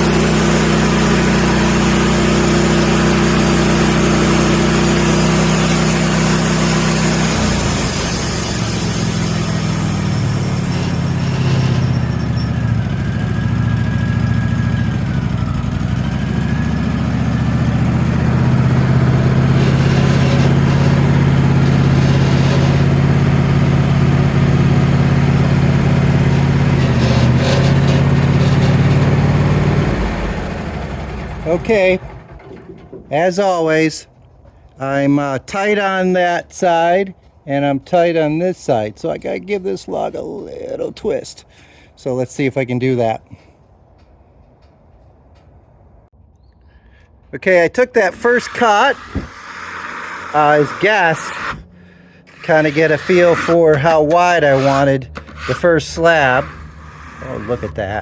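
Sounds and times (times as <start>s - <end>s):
machine engine running: 0.0s - 33.1s, 48.1s - 58.0s.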